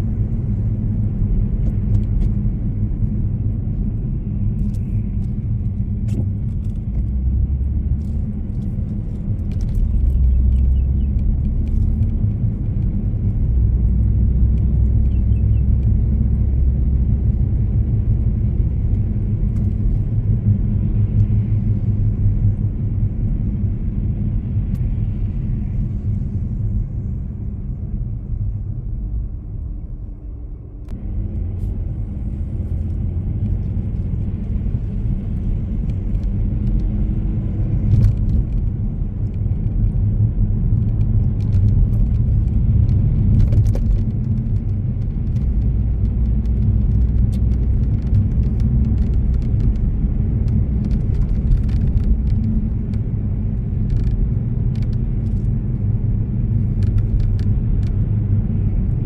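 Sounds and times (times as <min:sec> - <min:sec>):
car engine and road rumble: 0:00.0 - 0:59.0
light clicks and rattles: 0:40.7 - 0:55.6.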